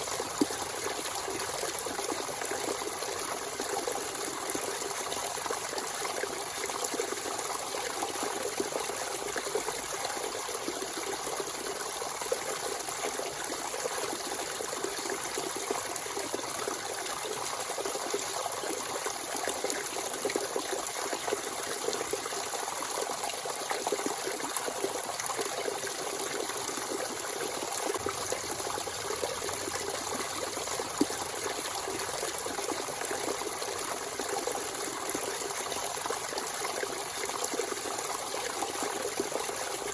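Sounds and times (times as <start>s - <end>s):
spring water trickling: 25.9s - 39.9s.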